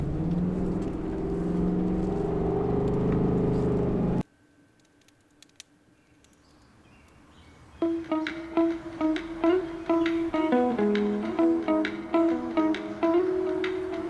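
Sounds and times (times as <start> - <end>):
vehicle engine running: 0.0 - 4.2
small clicks: 4.8 - 7.2.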